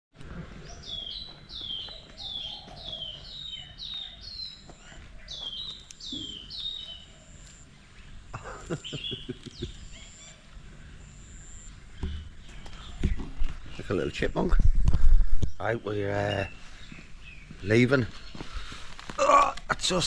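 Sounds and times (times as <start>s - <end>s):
squirrel chirping: 0.8s - 7.5s.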